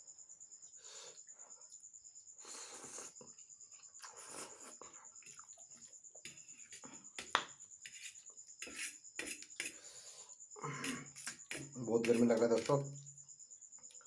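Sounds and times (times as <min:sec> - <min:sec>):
crickets chirring: 0:00.0 - 0:14.0.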